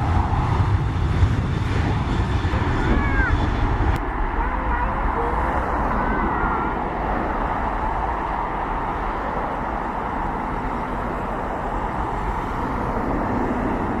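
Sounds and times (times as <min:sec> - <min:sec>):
jet engine rumble: 0:00.0 - 0:14.0.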